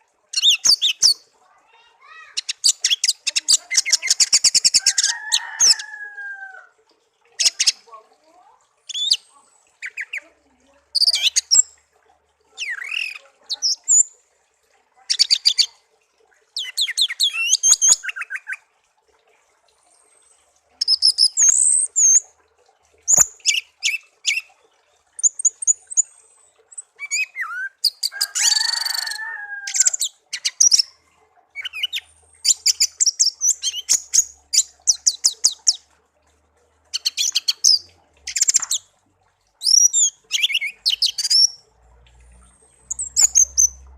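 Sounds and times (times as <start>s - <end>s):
songbird singing trills: 8.9s - 10.3s, 10.9s - 11.7s, 20.8s - 22.2s, 25.2s - 30.9s, 31.6s - 35.8s, 36.9s - 38.9s, 39.6s - 41.6s, 42.6s - 43.9s.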